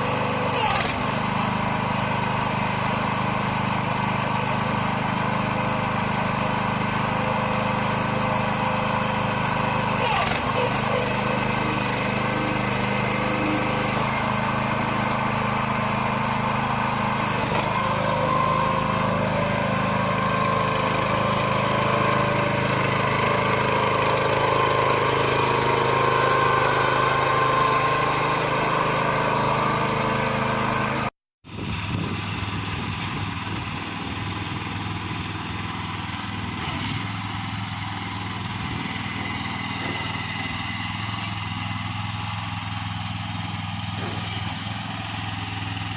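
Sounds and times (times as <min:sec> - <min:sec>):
gasoline engine running: 0:00.0 - 0:45.9.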